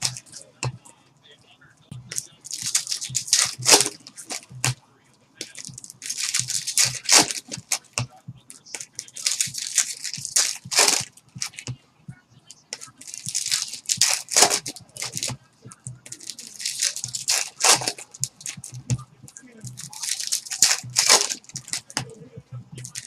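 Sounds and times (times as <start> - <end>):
plastic wrap and cardboard tearing: 2.1 - 4.5, 5.5 - 7.8, 9.0 - 11.6, 12.8 - 15.4, 16.0 - 18.7, 19.7 - 22.0.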